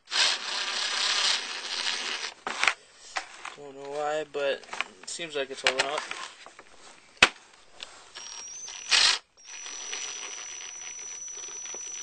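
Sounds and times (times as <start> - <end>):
screw scraping in plastic: 0.1 - 2.8, 7.8 - 12.0.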